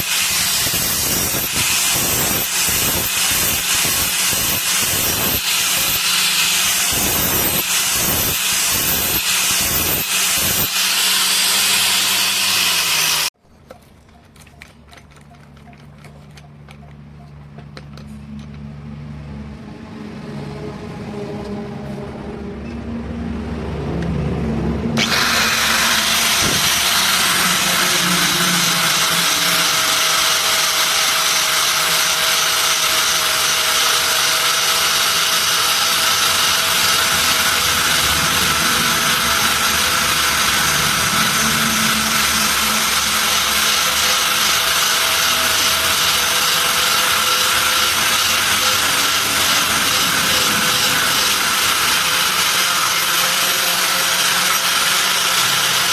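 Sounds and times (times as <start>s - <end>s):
power tool running: 0.0s - 13.4s, 25.0s - 55.9s.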